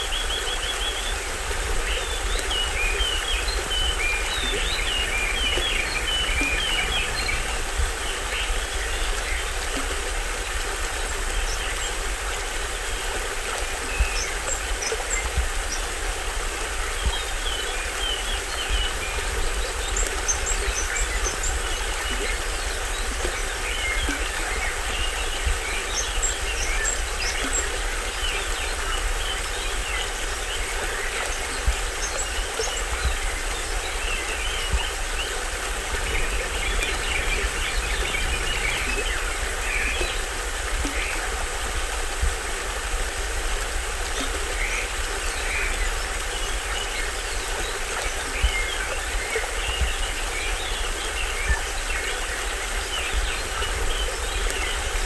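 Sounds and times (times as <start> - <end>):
small waterfall splashing: 0.0 - 55.0
birds chirping: 1.8 - 9.4, 33.7 - 41.3.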